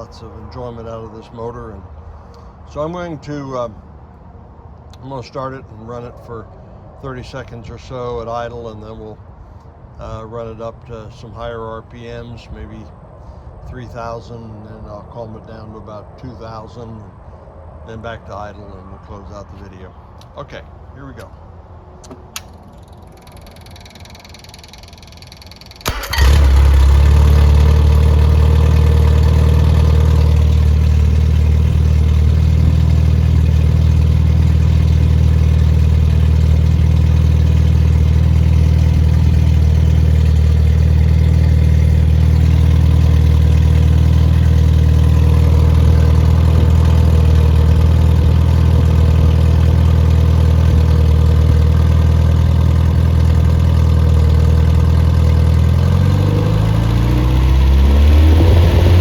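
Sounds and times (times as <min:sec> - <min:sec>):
car engine starting and idling: 0:22.1 - 0:59.0.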